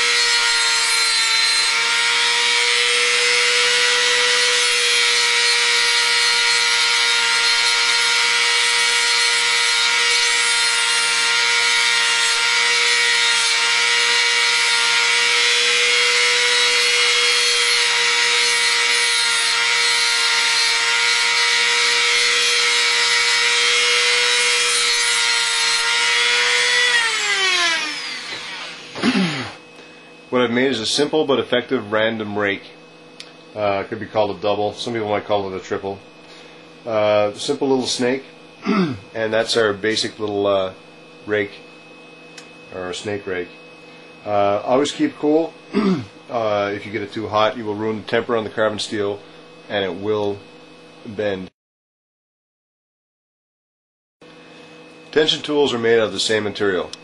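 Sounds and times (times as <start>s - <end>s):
rotary tool motor whine: 0.0s - 30.3s.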